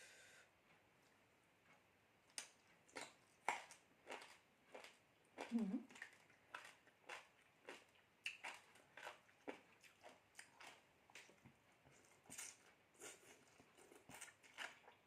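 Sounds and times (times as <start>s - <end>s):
person chewing food: 1.6s - 15.0s.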